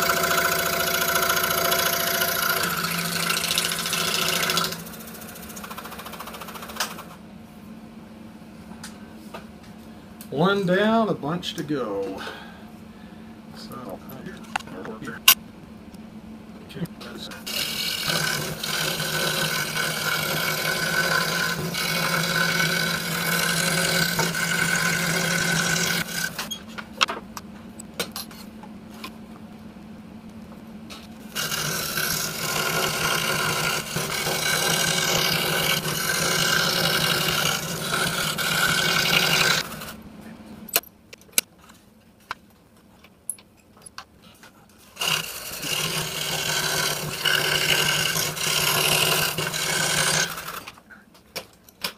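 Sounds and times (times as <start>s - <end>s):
scroll saw cutting wood: 0.0s - 7.1s, 17.5s - 26.5s, 31.2s - 40.0s, 44.9s - 50.8s.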